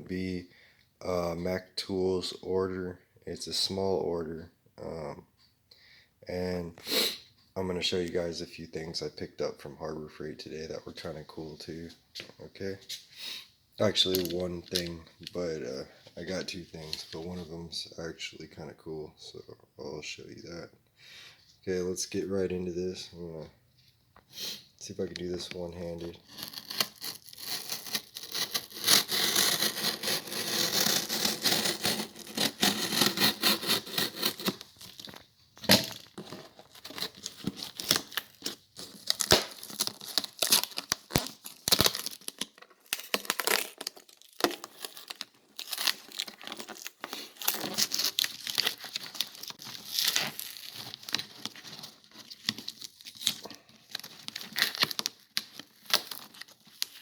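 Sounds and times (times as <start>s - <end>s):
packaging tearing and crinkling: 25.3s - 57.0s.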